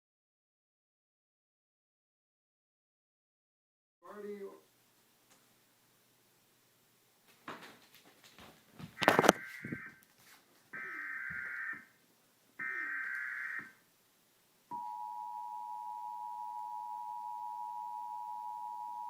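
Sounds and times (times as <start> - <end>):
two-tone attention signal: 14.7 - 19.0.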